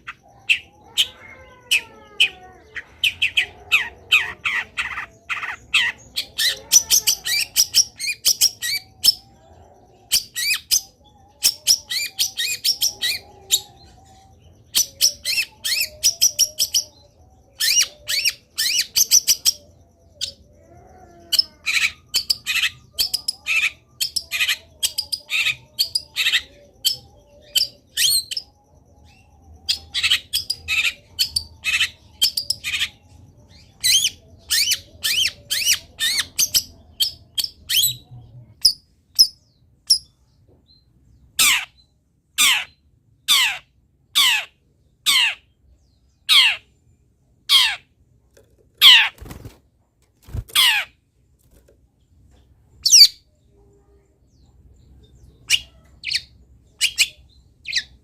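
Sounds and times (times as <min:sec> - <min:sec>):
bird high chattering song: 0:00.0 - 0:48.0, 0:48.8 - 0:49.6, 0:50.2 - 0:51.6, 0:52.2 - 0:58.0.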